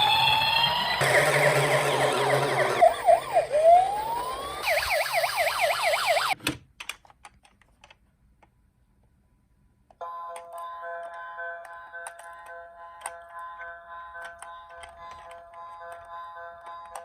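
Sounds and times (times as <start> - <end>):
toy sirens wailing: 0.0 - 6.4.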